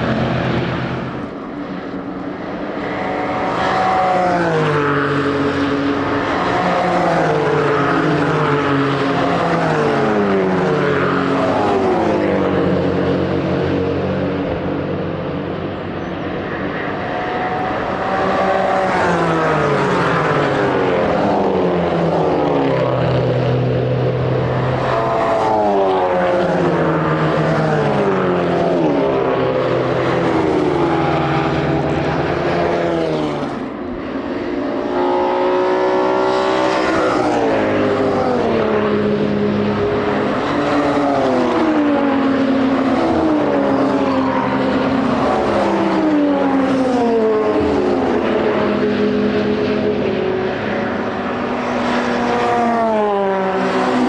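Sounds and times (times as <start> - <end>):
race car engines passing by: 0.0 - 54.0.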